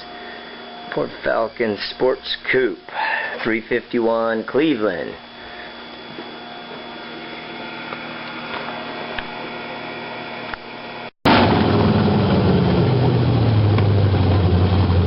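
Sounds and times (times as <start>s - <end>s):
low hum: 4.9s - 15.0s
engine running loud: 11.3s - 15.0s.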